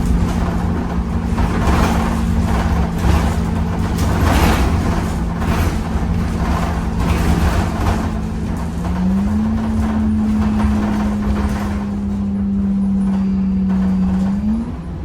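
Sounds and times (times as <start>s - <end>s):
bus engine rumble: 0.0s - 15.0s
two-note drivetrain whine: 6.9s - 15.0s.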